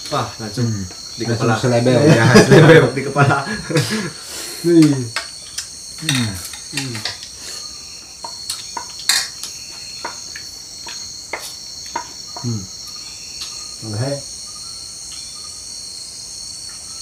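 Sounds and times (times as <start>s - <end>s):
insects trilling: 0.0s - 17.0s
spoon clinking against dish: 8.2s - 12.5s.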